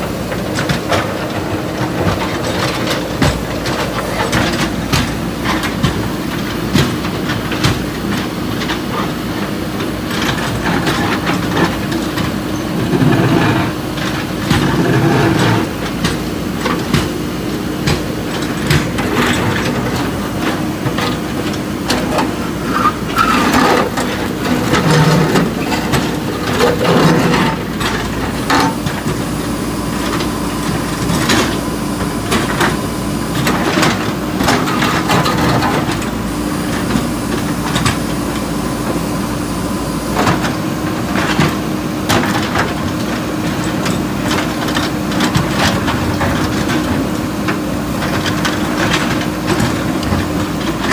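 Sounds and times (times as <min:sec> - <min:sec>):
diesel engine running under load: 0:00.0 - 0:50.9
debris knocks clanks and scrapes: 0:21.8 - 0:29.2.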